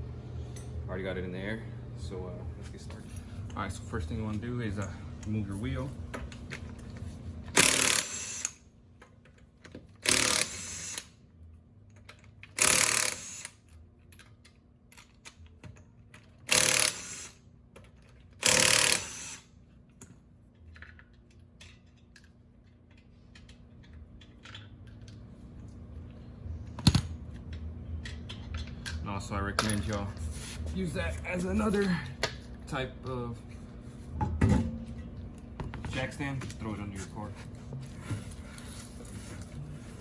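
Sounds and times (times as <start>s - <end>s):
impact wrench bursts: 7.5s - 8.7s, 10.0s - 11.2s, 12.5s - 13.7s, 16.5s - 17.4s, 18.4s - 19.6s.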